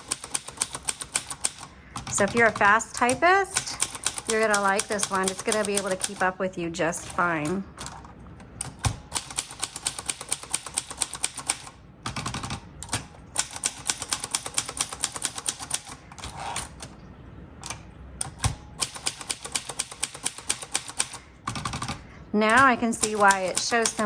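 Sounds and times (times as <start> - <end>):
typewriter keystrokes: 0.0 - 6.3, 8.6 - 16.9, 17.6 - 24.0.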